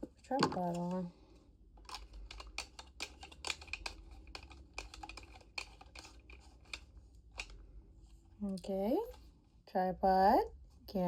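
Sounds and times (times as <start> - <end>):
small plastic parts clicking: 1.8 - 7.6.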